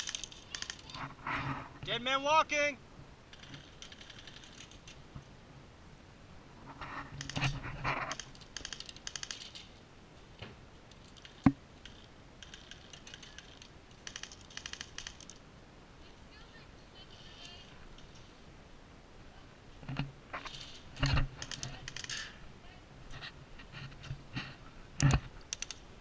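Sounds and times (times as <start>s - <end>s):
rapid airsoft gunfire: 12.4s - 15.2s.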